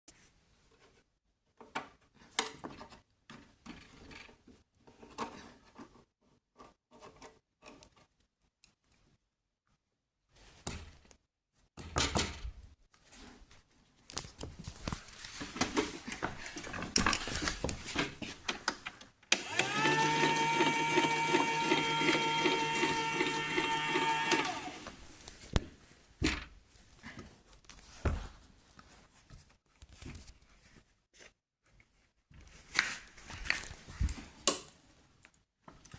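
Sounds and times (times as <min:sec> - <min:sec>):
small electric motor whirring: 0:19.4 - 0:25.0.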